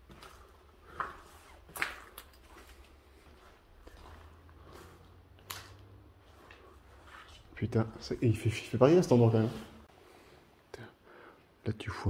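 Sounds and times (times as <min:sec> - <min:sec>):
footsteps on debris: 0:00.0 - 0:08.3.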